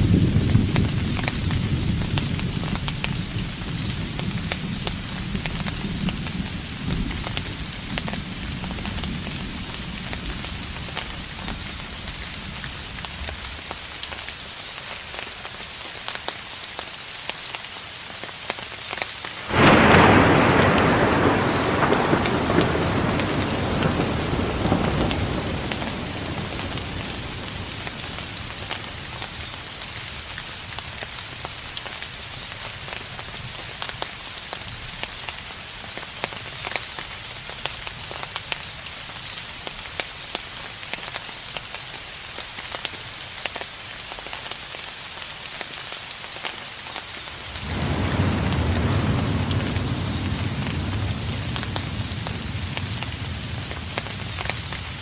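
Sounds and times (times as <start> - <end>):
steady rain falling: 0.0 - 55.0
distant thunder rumbling: 19.4 - 30.2, 47.5 - 55.0.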